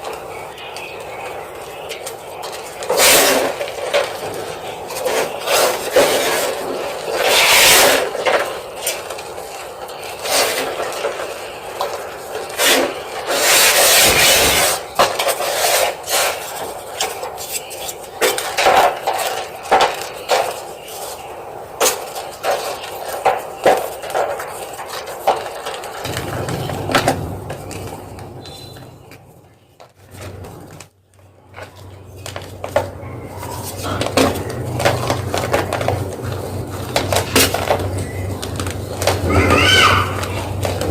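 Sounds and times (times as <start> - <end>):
chalk crunching: 0.0 - 29.2.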